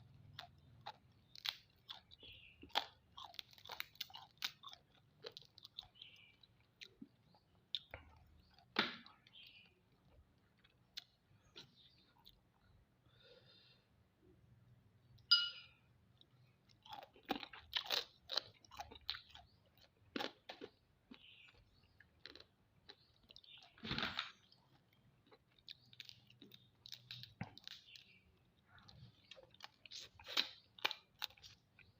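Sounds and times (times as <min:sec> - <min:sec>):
chewing: 0:00.0 - 0:12.8, 0:16.2 - 0:31.9
crab shell crunching: 0:00.2 - 0:07.9.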